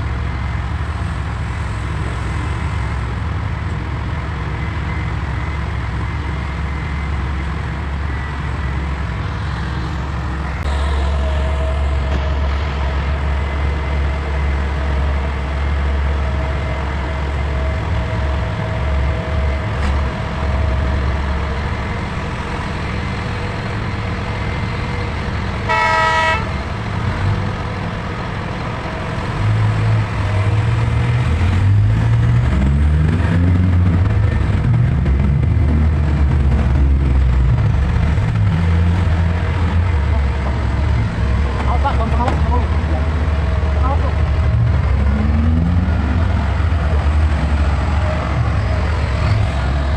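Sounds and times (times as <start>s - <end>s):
heavy diesel engines running: 0.0s - 49.9s
horn blast: 25.6s - 26.6s
engine revving up: 29.4s - 39.9s.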